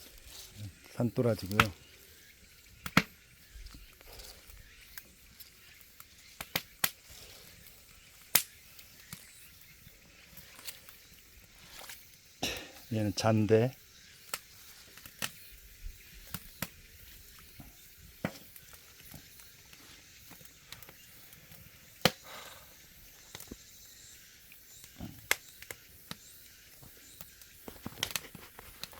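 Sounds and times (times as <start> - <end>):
wood fire crackling: 0.0 - 28.9.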